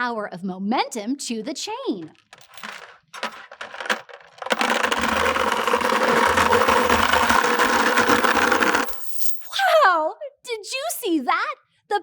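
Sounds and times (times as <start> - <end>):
chain rattling out of bucket: 2.2 - 9.5.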